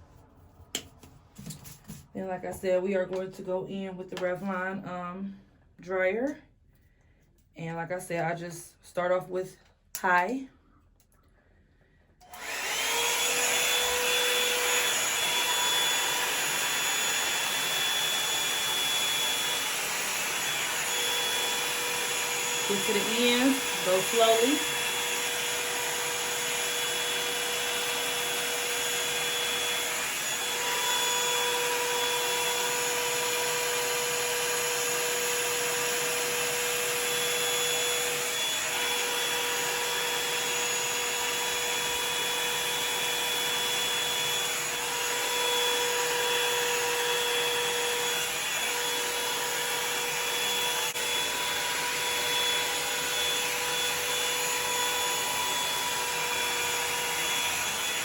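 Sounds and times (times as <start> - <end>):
hot-air brush dryer blowing: 12.2 - 58.0.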